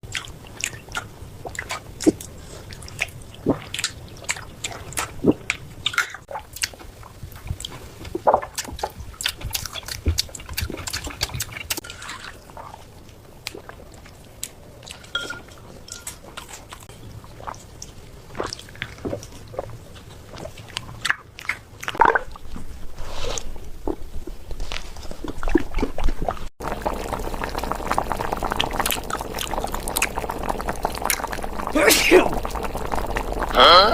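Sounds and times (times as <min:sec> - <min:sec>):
cats chewing and lapping: 0:06.3 - 0:15.0, 0:16.2 - 0:22.7
bubbling or pouring noise: 0:21.9 - 0:22.6, 0:25.2 - 0:33.9.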